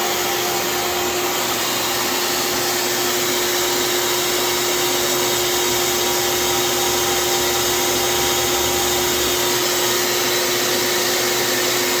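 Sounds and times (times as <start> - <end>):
machine motor whine: 0.0 - 12.0.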